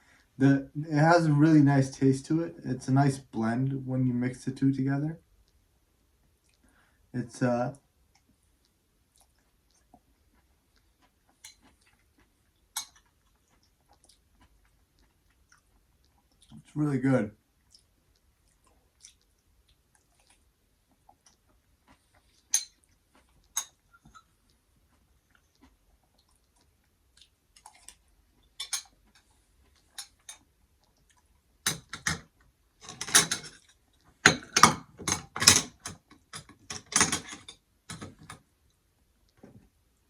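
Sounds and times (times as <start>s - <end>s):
utensil clinking and scraping dishes: 22.5s - 22.8s, 28.6s - 29.0s, 31.7s - 38.4s.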